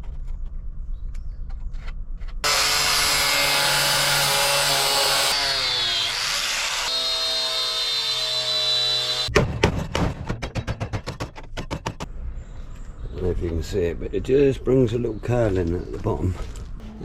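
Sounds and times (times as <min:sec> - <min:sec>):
power tool cutting metal: 0:02.4 - 0:09.3.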